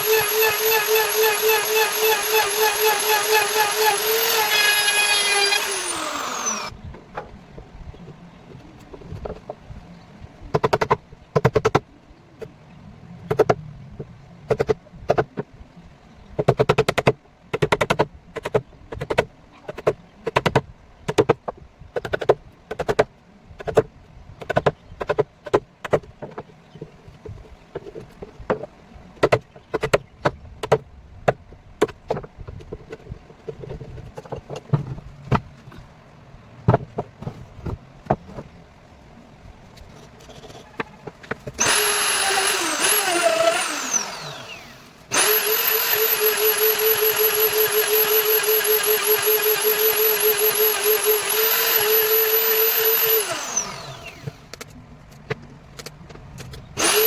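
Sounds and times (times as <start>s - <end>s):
router motor whining down: 0.0s - 6.8s, 41.6s - 54.5s, 56.8s - 57.0s.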